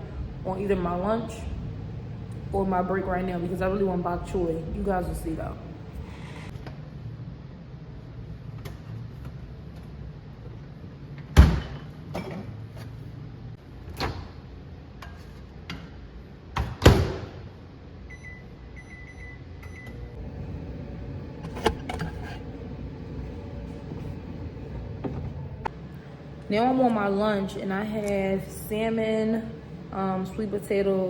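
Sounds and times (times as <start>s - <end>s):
steady low hum: 0.0s - 31.0s
microwave keypad beeps: 18.1s - 20.0s.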